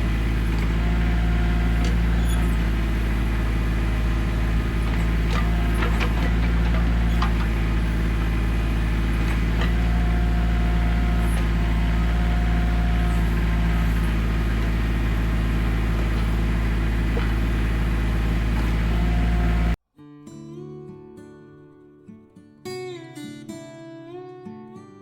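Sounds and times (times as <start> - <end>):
engine running: 0.0 - 19.8
acoustic guitar music: 0.0 - 25.0.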